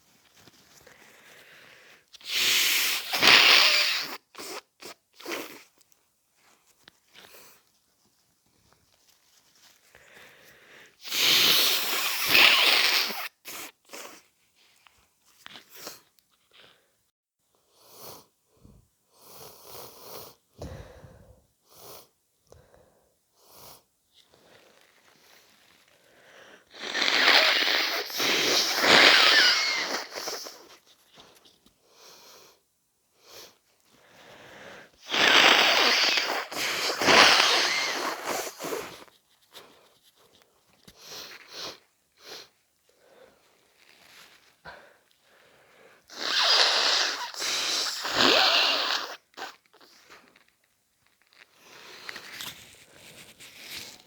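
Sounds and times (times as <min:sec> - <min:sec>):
short sniffs: 0:00.7 - 0:05.8, 0:09.6 - 0:14.4, 0:25.2 - 0:32.6, 0:33.2 - 0:50.3
person blowing nose: 0:00.8 - 0:05.8, 0:10.1 - 0:14.3, 0:26.3 - 0:30.9, 0:34.2 - 0:39.9, 0:40.9 - 0:43.2, 0:46.1 - 0:50.4.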